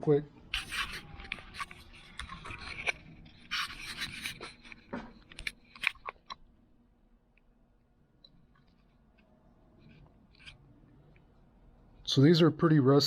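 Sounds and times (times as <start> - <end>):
pliers scraping and rustling: 0.5 - 6.4.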